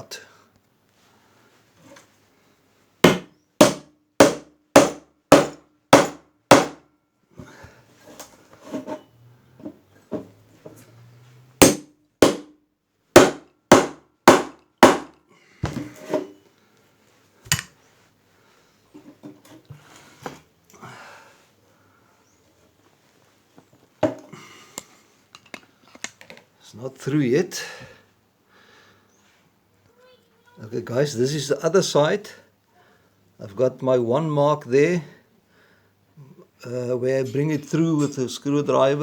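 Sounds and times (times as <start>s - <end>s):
light metal tapping and scraping: 8.0s - 10.8s, 17.5s - 17.8s, 23.6s - 26.5s.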